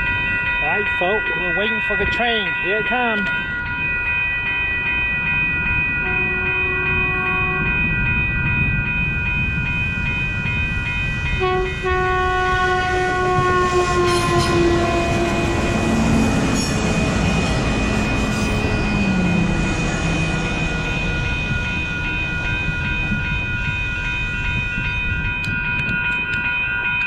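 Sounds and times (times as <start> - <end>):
train wheels rumbling on rails: 0.0 - 27.0
train horn: 6.0 - 7.8, 11.4 - 19.8.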